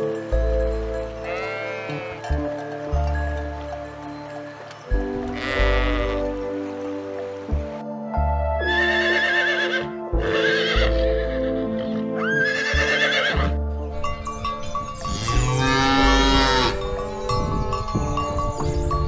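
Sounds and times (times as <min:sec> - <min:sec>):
background music: 0:00.0 - 0:19.0
farm animal calls: 0:01.1 - 0:02.4, 0:05.2 - 0:06.5, 0:15.1 - 0:18.4.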